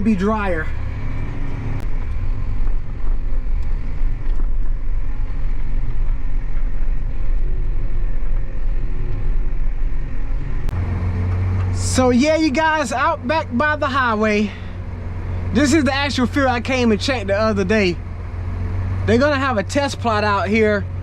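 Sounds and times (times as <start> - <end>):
tractor engine running: 0.0 - 21.0.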